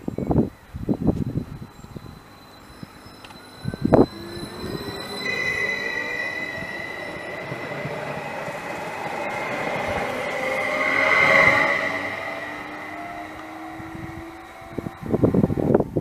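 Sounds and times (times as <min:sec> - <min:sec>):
train wheels squealing: 0:00.0 - 0:16.0.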